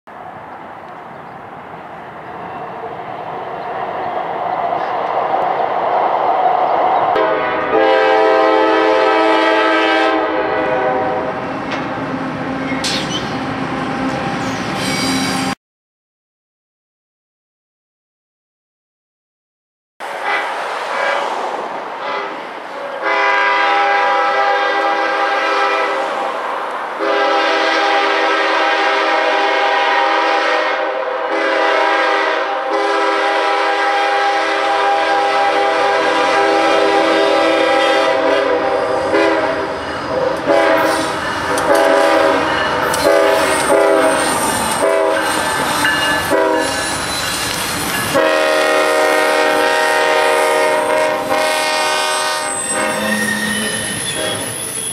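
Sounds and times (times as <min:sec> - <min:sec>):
locomotive air horn: 0:07.2 - 0:11.4, 0:20.2 - 0:21.4, 0:22.0 - 0:26.2, 0:27.0 - 0:47.0, 0:48.1 - 0:54.8.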